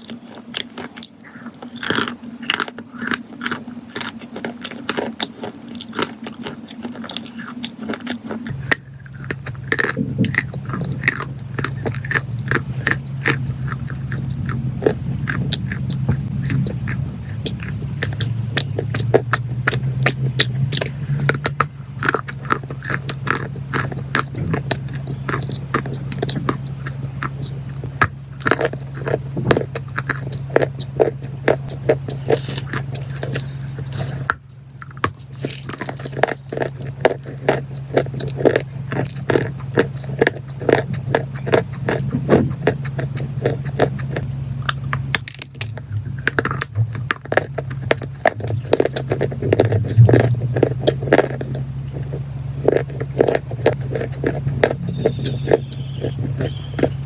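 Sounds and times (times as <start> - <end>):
crunchy chewing and biting: 0.0 - 57.0
low hum: 5.7 - 57.0.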